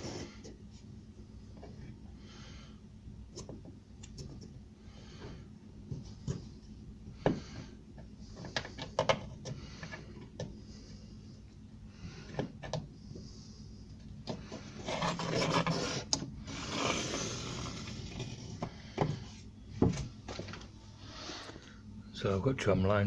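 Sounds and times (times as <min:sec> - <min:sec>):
wood scraping on wood: 0:14.3 - 0:19.4.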